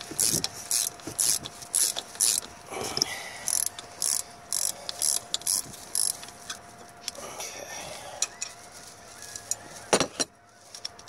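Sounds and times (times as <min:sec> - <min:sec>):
ratchet wrench clicking: 0:00.0 - 0:06.4.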